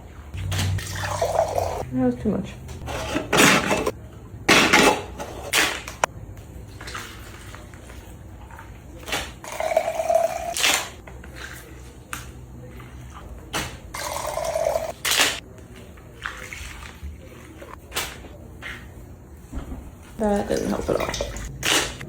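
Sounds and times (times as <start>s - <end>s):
liquid pouring into container: 0.5s - 1.8s.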